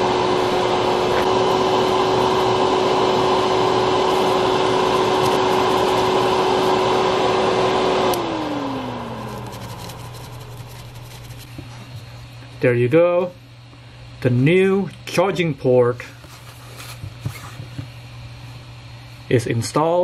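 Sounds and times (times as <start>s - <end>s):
electric blower humming: 0.0s - 12.2s.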